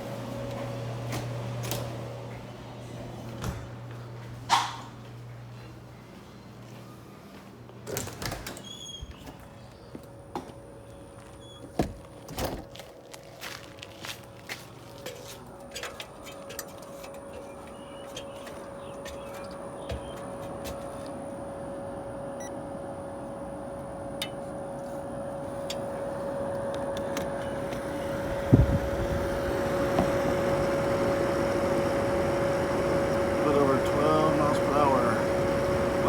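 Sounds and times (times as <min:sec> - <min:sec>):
steady hum: 0:09.5 - 0:36.0
air rushing from dryer vent: 0:24.7 - 0:36.0.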